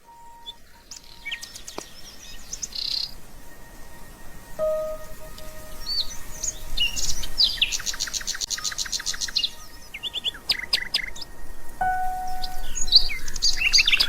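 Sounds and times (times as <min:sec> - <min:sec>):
bird high chirps: 0:04.6 - 0:14.0.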